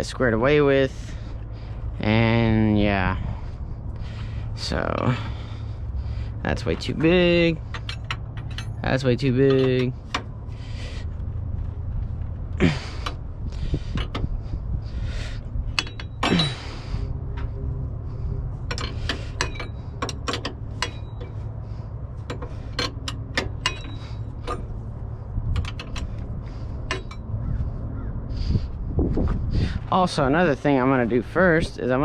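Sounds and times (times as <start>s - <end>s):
steady low rumble: 0.0s - 32.0s
metal hand tools clinking: 7.7s - 9.9s, 18.7s - 21.4s, 22.3s - 24.7s.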